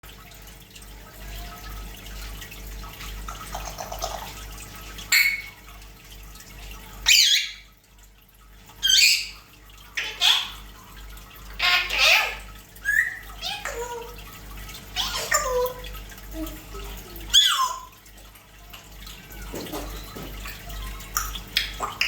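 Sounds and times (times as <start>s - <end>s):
parrot squawking and whistling: 5.1s - 5.6s, 7.0s - 7.7s, 8.8s - 9.4s, 10.0s - 10.6s, 11.6s - 14.0s, 14.9s - 15.8s, 17.2s - 17.9s
parrot soft chattering: 10.0s - 10.6s, 11.5s - 14.2s, 14.8s - 17.9s.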